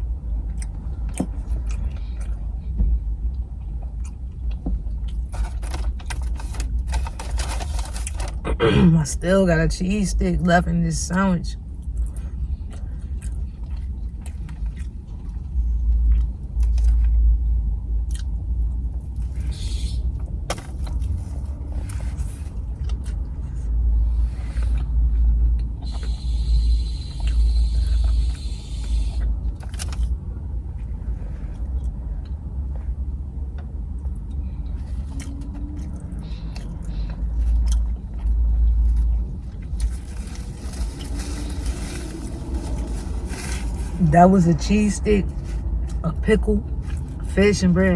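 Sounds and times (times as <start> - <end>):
chewing and mouth noises: 0.4 - 2.7, 11.7 - 19.5, 20.2 - 30.2, 30.8 - 43.9
steady low rumble: 8.4 - 47.9.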